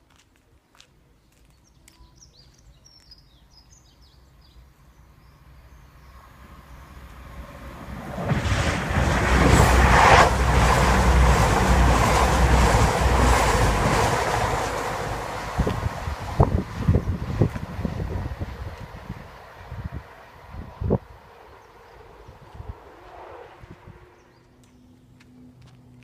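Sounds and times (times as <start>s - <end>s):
bird chirping: 1.3s - 6.9s
train passing at speed: 4.5s - 26.0s
wheels rumbling on rails: 4.9s - 26.0s.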